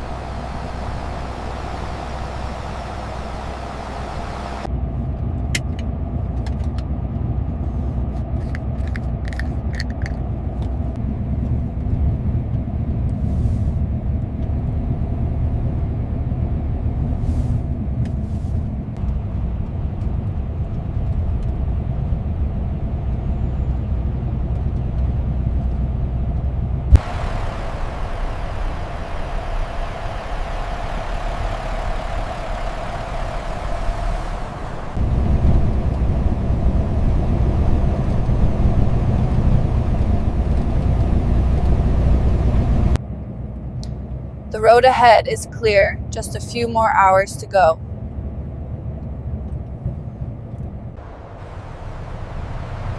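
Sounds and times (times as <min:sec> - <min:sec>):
truck engine and road rumble: 0:00.0 - 0:52.9.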